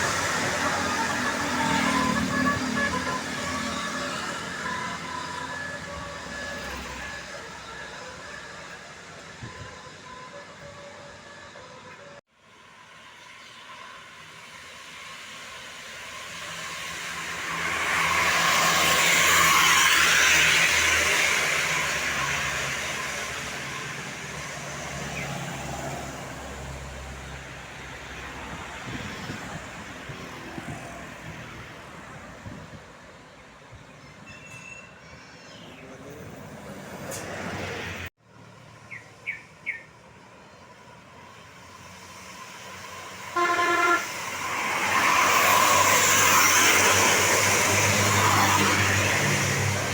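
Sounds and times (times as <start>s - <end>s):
short horn beeps: 34.2s - 35.0s, 43.4s - 44.2s
heavy vehicle passing: 41.0s - 49.9s.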